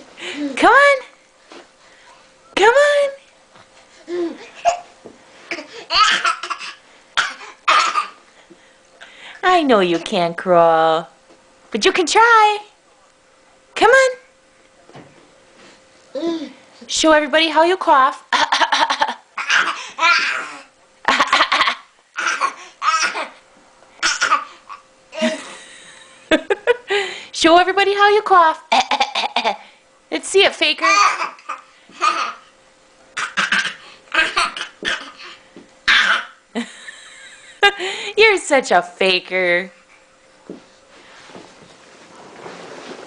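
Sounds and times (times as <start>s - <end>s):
baby fake coughing: 4.6s - 4.9s, 5.5s - 8.2s, 19.4s - 20.7s, 22.2s - 23.4s, 24.0s - 24.8s, 30.8s - 32.4s, 33.2s - 36.4s
laughter: 21.1s - 21.9s, 25.2s - 26.9s, 36.6s - 37.9s.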